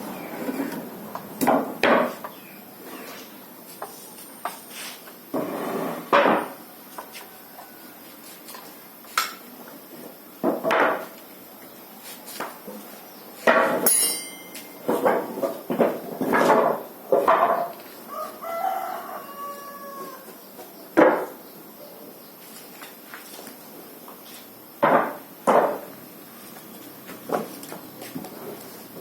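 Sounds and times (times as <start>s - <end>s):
wood and tools knocking: 10.4s - 11.2s, 13.4s - 17.8s, 21.0s - 21.3s, 24.8s - 25.9s
sharp strikes: 13.9s - 14.9s.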